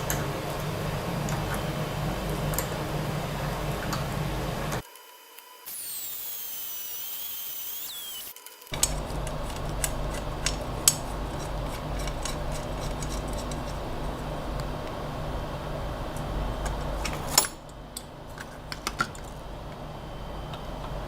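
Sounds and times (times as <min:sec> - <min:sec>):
electric drill cutting metal: 0:04.8 - 0:10.3.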